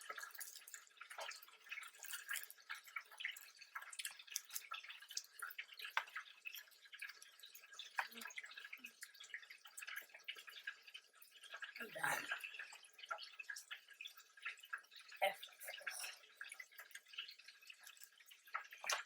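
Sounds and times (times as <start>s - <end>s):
person chewing food: 0.0s - 8.4s.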